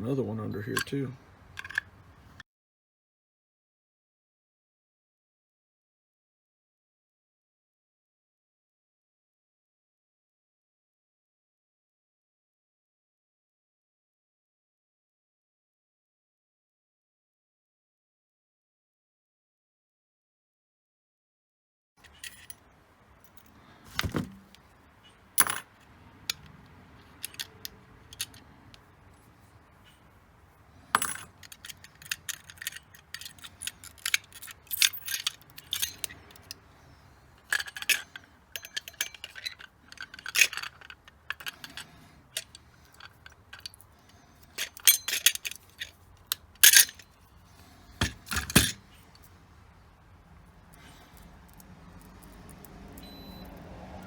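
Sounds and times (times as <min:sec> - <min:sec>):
metal parts clinking and scraping: 0:00.7 - 0:02.0, 0:22.0 - 0:49.5, 0:50.3 - 0:53.5.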